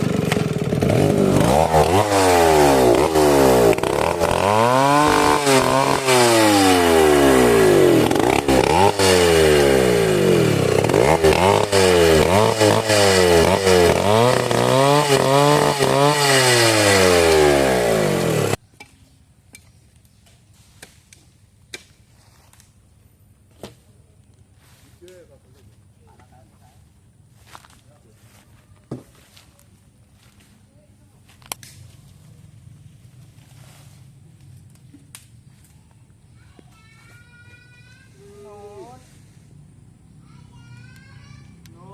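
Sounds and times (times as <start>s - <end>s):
chainsaw cutting wood: 0.0s - 18.6s.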